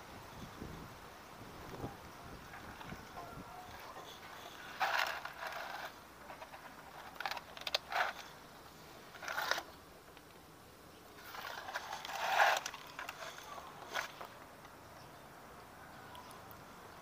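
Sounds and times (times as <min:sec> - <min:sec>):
scraping and rustling of parts: 0:02.5 - 0:10.4, 0:11.2 - 0:14.7.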